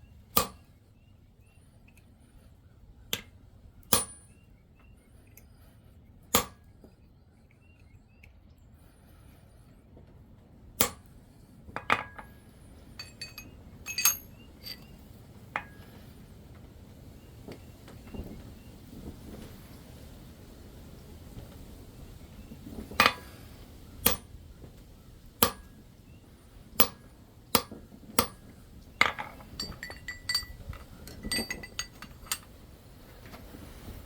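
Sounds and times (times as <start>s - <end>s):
small tools tapping metal: 11.8s - 12.4s, 13.0s - 16.0s, 23.0s - 23.4s, 24.0s - 24.4s, 25.4s - 25.7s, 26.8s - 32.6s
hammer striking metal: 13.0s - 14.9s, 25.4s - 25.7s.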